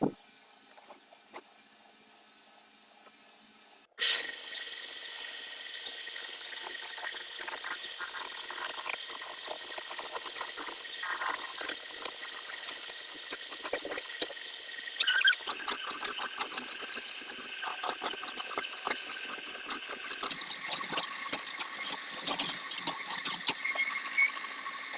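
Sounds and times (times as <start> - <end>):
wood lathe whine: 4.0 - 24.9
chisel scraping spinning wood: 6.6 - 23.9.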